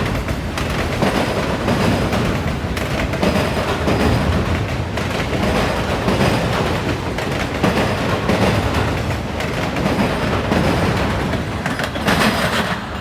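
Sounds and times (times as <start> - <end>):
freight train wheels clattering: 0.0 - 13.0.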